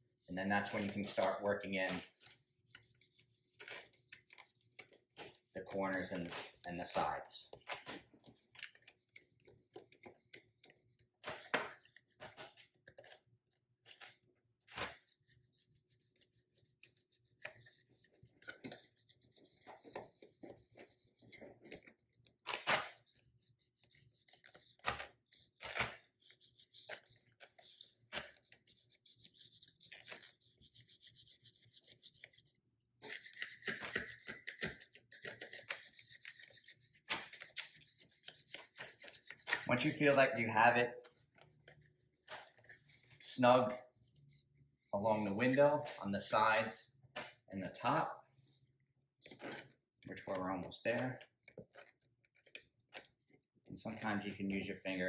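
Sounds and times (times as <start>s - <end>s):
squeegee scraping on window glass: 23.3s - 44.3s.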